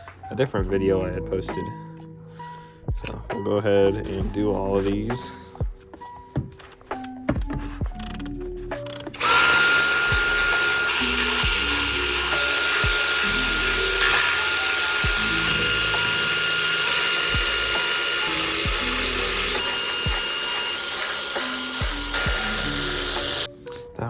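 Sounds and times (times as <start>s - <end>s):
electric ratchet wrench motor whine: 8.0s - 23.5s.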